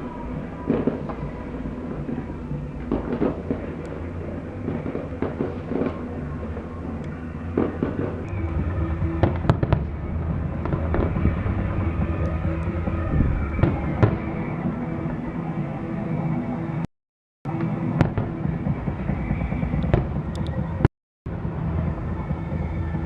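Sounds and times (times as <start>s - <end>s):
fireworks bangs: 0.0s - 15.5s, 17.5s - 20.9s
low rumble: 0.0s - 16.2s
loud firework cracks: 0.4s - 8.4s.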